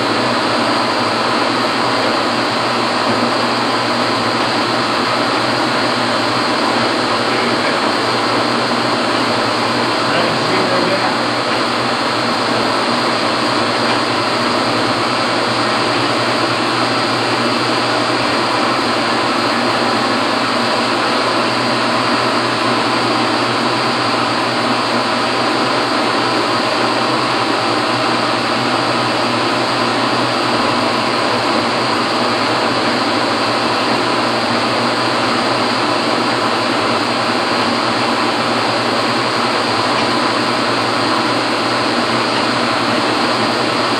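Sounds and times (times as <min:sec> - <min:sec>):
low motor hum: 0:06.4 - 0:20.5.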